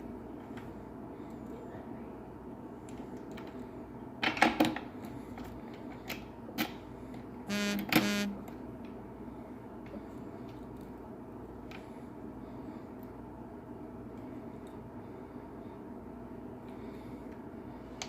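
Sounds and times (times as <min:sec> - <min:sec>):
short buzz: 0:07.5 - 0:08.4.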